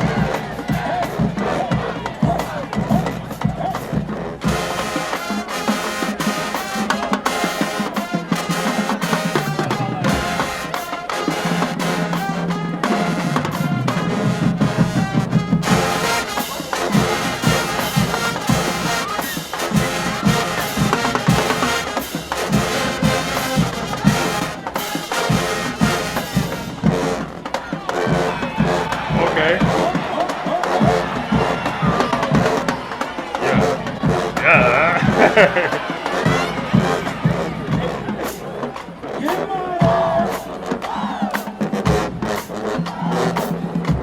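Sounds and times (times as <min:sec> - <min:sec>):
drums beating: 0:00.0 - 0:44.0
trumpets and trombones: 0:00.0 - 0:44.0.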